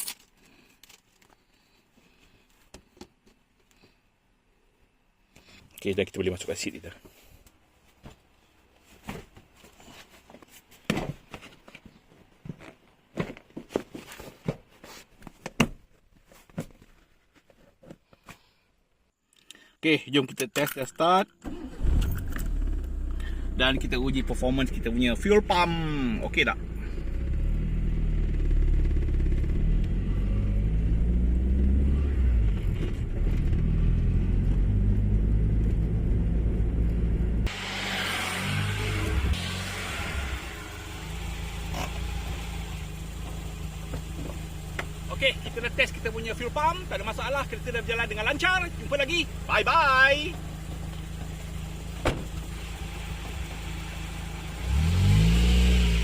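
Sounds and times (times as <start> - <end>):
car engine running steadily: 22.2 - 56.0
car seat knocks and thuds: 52.0 - 52.4.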